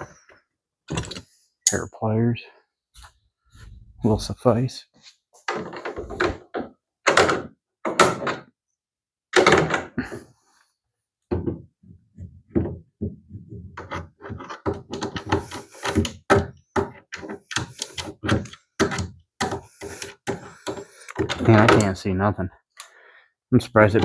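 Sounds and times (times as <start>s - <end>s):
pliers clicking and clunking on bolt: 13.8s - 22.0s.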